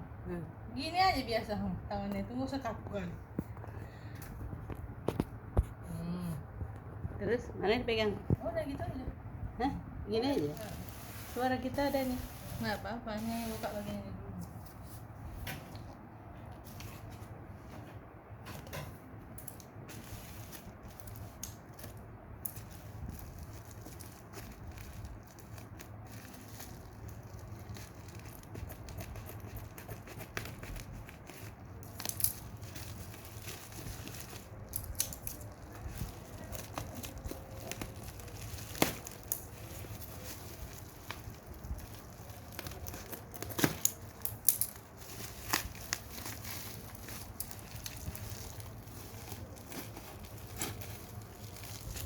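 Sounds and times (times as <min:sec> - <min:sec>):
packaging crinkling and rustling: 0:18.3 - 0:52.0
packaging snapping and tearing: 0:20.6 - 0:52.0.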